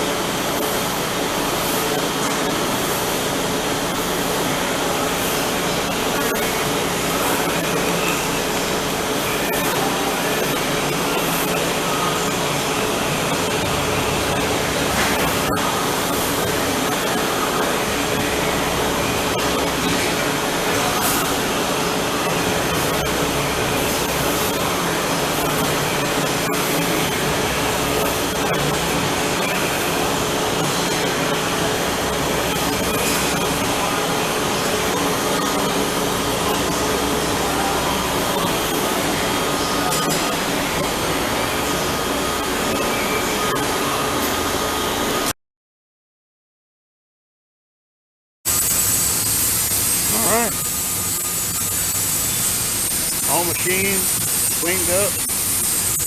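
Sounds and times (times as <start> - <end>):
machine-shop equipment whirring: 0.0 - 45.3, 48.5 - 56.0.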